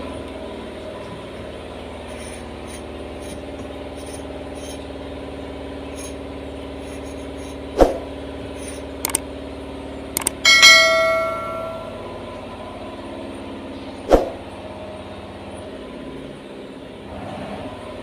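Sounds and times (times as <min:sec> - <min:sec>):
mechanical hum: 0:00.0 - 0:18.0
metal object ringing: 0:10.3 - 0:12.4.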